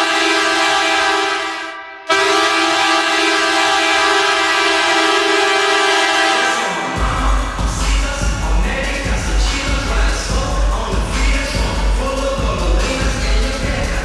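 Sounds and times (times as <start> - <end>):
goal horn blasts: 0.0 - 8.1.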